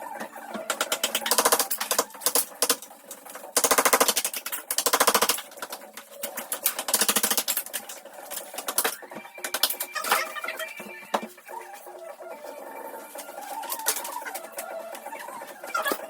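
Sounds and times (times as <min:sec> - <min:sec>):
power tool hammering: 0:03.5 - 0:05.5.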